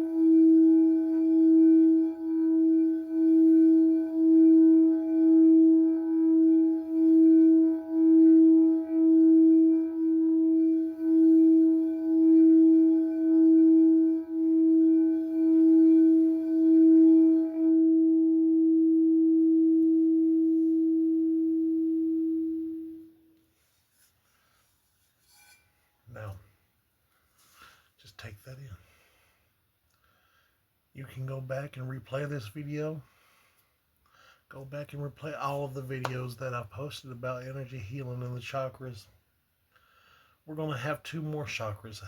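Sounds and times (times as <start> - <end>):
singing bowl pulsing tone: 0.0 - 23.4.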